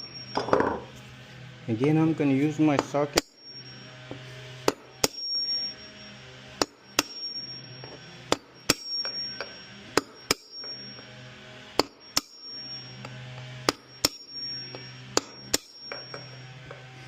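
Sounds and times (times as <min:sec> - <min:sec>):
hammer striking metal socket: 0:06.6 - 0:11.1, 0:11.8 - 0:16.9.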